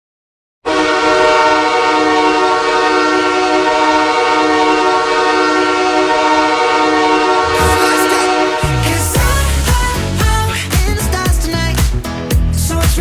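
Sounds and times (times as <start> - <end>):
goal horn blast: 0.7 - 10.1.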